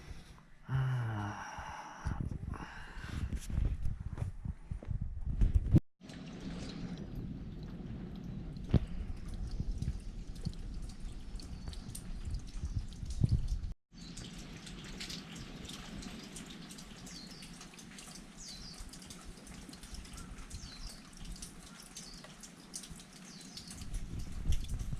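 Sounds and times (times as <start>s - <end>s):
water drops plinking: 6.0s - 24.8s.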